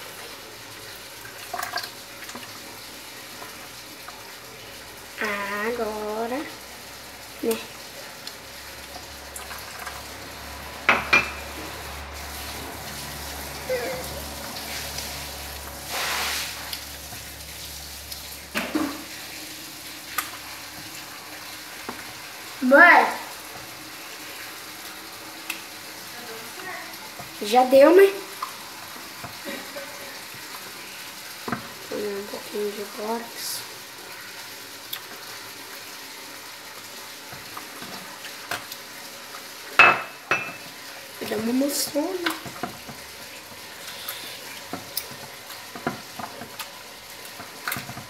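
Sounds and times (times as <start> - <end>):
faint wet hiss: 15.8 - 16.8, 43.8 - 44.6.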